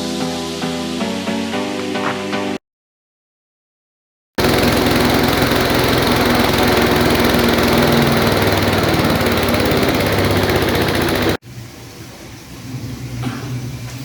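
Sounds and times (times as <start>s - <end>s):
grinding machine droning: 4.4s - 11.4s.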